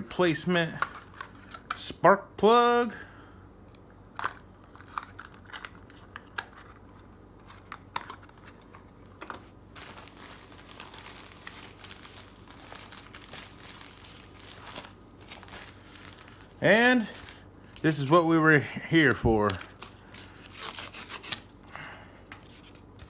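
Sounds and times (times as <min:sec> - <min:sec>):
packaging crinkling and rustling: 0:04.2 - 0:21.6, 0:22.2 - 0:23.0.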